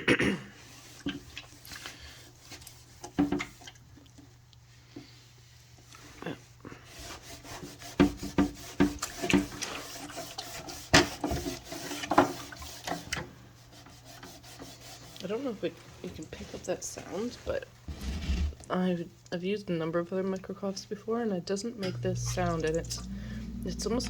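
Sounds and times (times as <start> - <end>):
cloth scrubbing with rasping strokes: 6.8 - 16.0.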